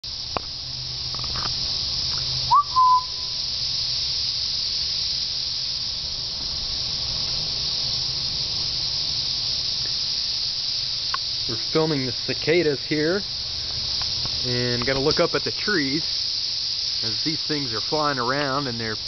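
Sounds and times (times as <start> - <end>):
cicadas droning: 0.0 - 19.0
rising whistled note: 2.5 - 3.4.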